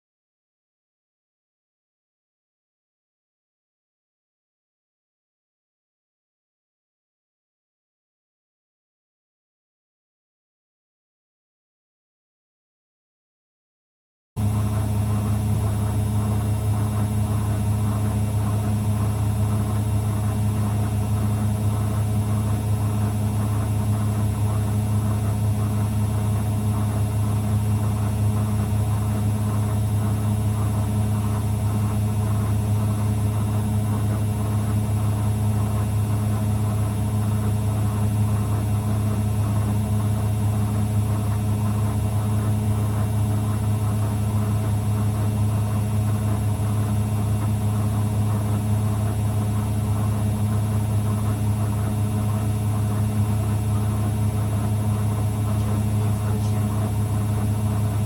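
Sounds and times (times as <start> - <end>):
washing machine humming: 14.4 - 58.0.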